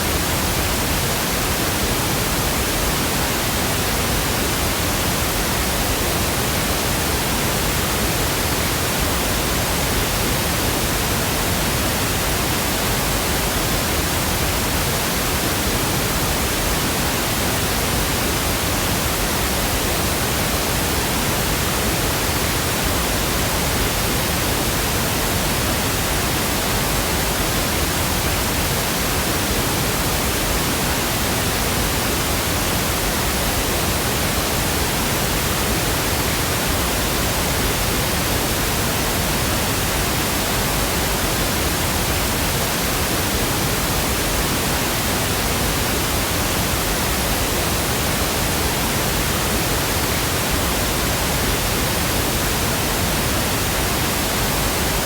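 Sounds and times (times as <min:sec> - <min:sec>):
steady pink noise hiss: 0:00.0 - 0:55.0.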